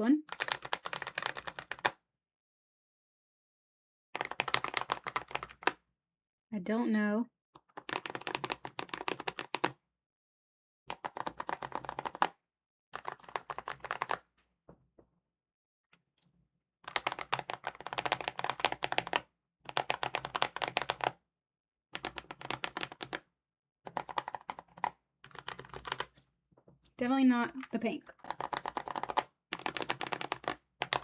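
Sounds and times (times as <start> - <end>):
mechanical keyboard typing: 0.2 - 2.0, 4.2 - 5.8, 7.6 - 9.8, 10.9 - 12.4, 13.0 - 14.3, 16.9 - 21.2, 22.0 - 23.2, 23.9 - 26.2, 27.5 - 31.0.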